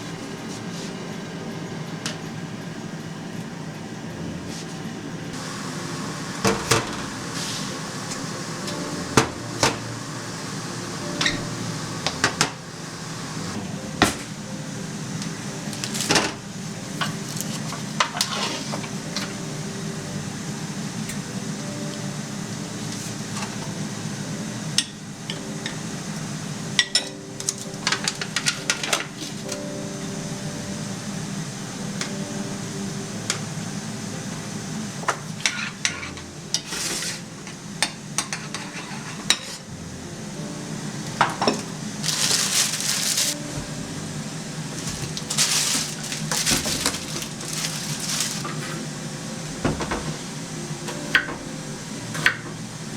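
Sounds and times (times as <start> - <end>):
low appliance hum: 0.0 - 52.9
utensils and dishes clinking: 26.7 - 29.6, 35.4 - 39.7, 41.2 - 43.7, 44.7 - 48.9.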